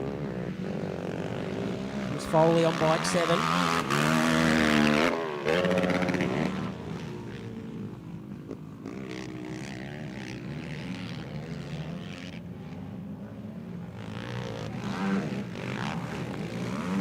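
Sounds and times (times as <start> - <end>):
quad bike engines revving: 0.0 - 17.0.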